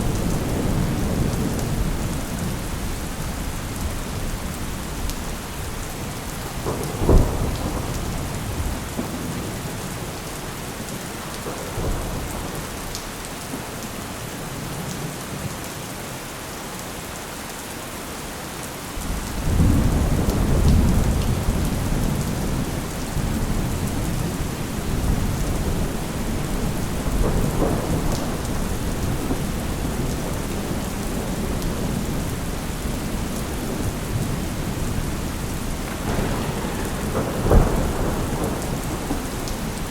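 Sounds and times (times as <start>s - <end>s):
rolling thunder rumble: 0.0s - 10.5s, 19.0s - 39.9s
heavy rain hissing: 0.0s - 14.8s, 18.7s - 39.9s
sharp thunderclap: 6.4s - 10.1s, 19.0s - 39.9s.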